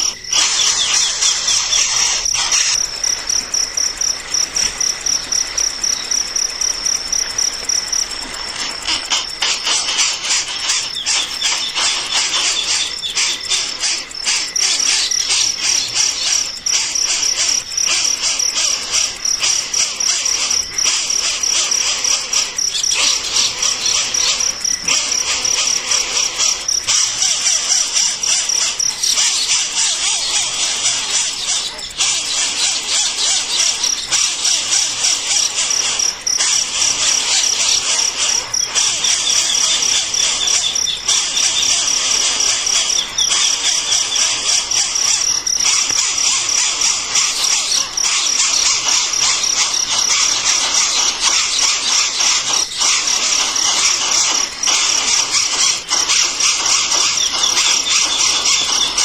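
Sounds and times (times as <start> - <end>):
insects chirring: 0.0 - 59.0.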